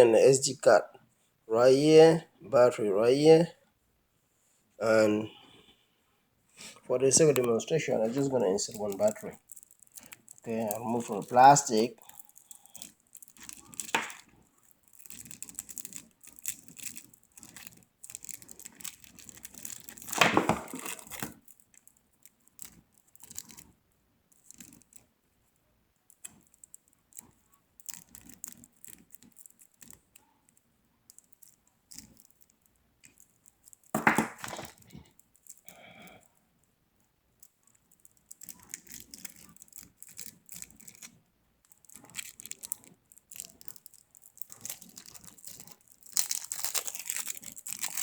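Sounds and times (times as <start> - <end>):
plastic wrapping crinkling and tearing: 7.0 - 23.7, 26.2 - 30.2, 31.2 - 36.2, 37.4 - 48.0.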